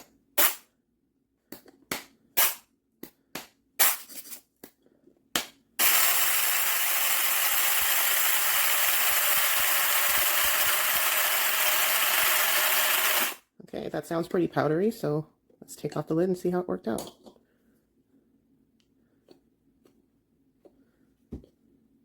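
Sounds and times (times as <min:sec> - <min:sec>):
coffee grinder grinding peppercorns: 0:05.8 - 0:13.4.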